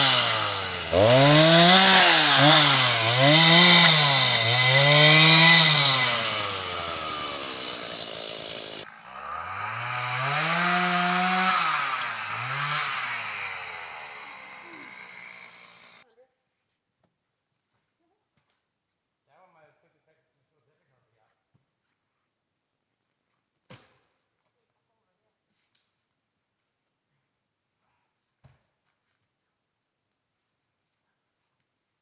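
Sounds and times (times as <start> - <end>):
chainsaw revving through wood: 0.0 - 16.0.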